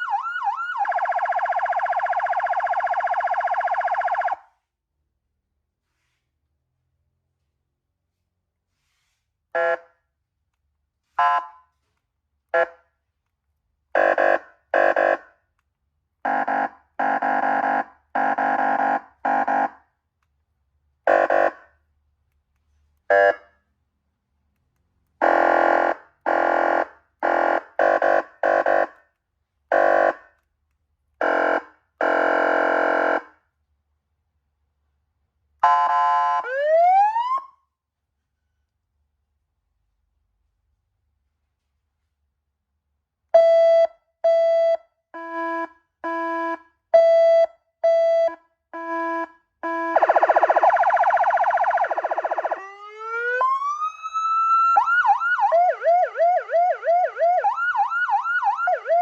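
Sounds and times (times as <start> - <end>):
rising siren wail: 0.0 - 4.4, 36.4 - 37.5, 49.7 - 59.0
siren horn blasts: 9.6 - 10.0, 11.1 - 11.8, 12.5 - 12.8, 14.0 - 15.3, 16.2 - 19.8, 21.0 - 21.7, 23.1 - 23.6, 25.2 - 29.1, 29.7 - 30.4, 31.2 - 33.4, 43.4 - 54.2.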